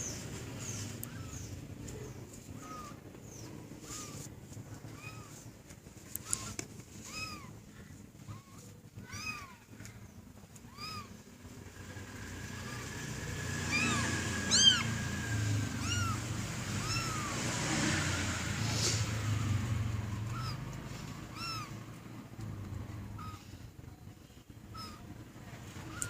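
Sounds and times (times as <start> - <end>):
kitten mewing: 1.0 - 3.1, 3.8 - 5.5, 6.1 - 9.8, 10.6 - 11.2, 13.6 - 15.0, 15.7 - 17.5, 18.8 - 20.7, 21.3 - 21.8, 24.6 - 25.2, 25.8 - 26.0.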